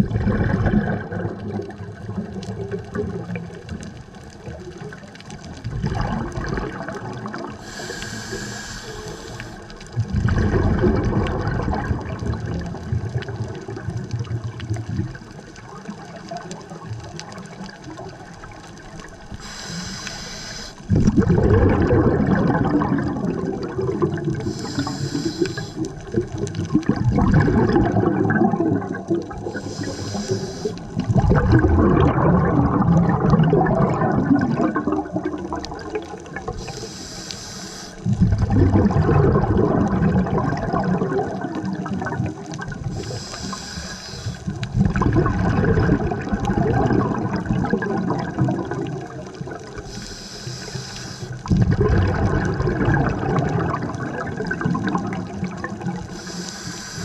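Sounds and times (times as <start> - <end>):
exhaled bubbles churning: 0.0 - 57.0
regulator inhalation hisses: 7.6 - 9.8, 19.4 - 20.9, 24.4 - 26.0, 29.5 - 30.9, 36.6 - 38.1, 42.9 - 44.5, 49.9 - 51.4, 56.1 - 57.0.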